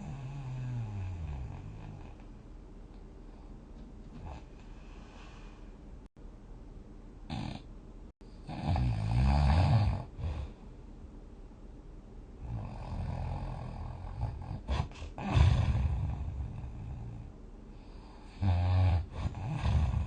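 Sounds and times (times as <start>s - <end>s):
person snoring: 0.0s - 2.2s, 7.3s - 7.7s, 8.4s - 10.6s, 12.4s - 17.3s, 17.9s - 20.0s.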